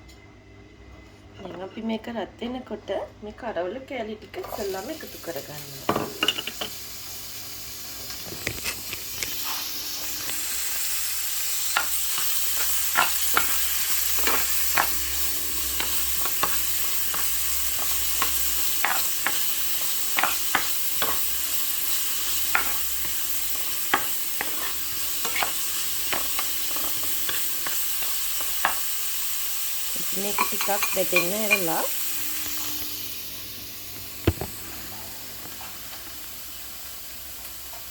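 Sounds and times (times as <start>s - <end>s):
fish sizzling in hot oil: 4.6s - 34.6s, 35.8s - 37.9s.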